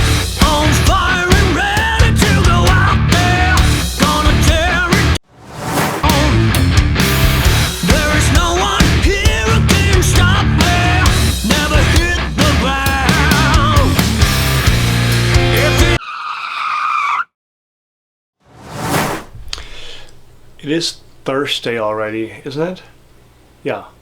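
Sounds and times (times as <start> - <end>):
rock music: 0.0 - 5.2, 6.0 - 16.0.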